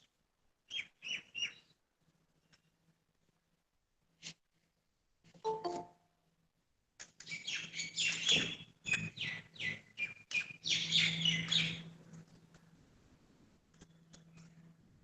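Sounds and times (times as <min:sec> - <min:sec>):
small birds chirping: 0:00.6 - 0:01.8, 0:07.2 - 0:11.9.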